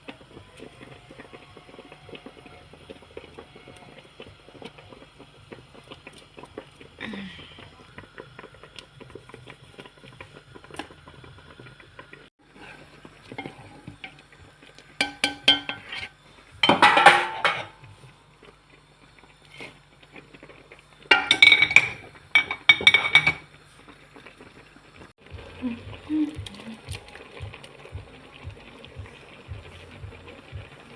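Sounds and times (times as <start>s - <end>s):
metal pots and utensils clattering: 12.5s - 14.2s, 15.0s - 17.9s, 21.1s - 23.5s.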